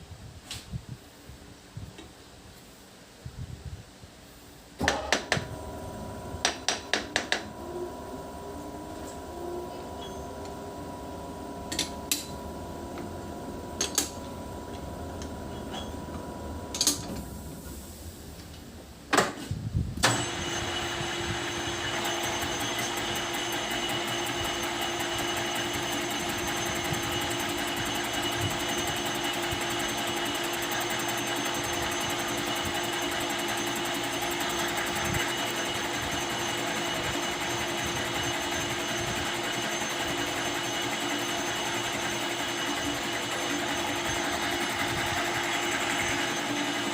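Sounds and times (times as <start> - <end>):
low hum: 4.8 - 18.6
lathe running with whine: 4.9 - 18.0, 20.0 - 46.9.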